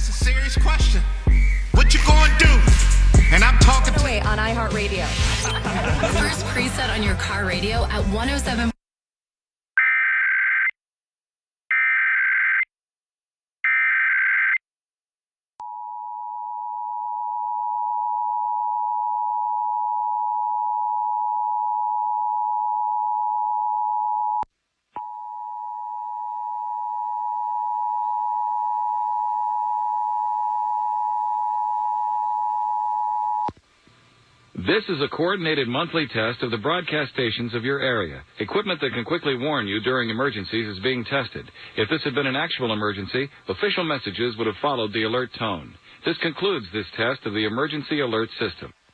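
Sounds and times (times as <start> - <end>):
digital data tones: 2.1 - 4.2, 5.0 - 6.5.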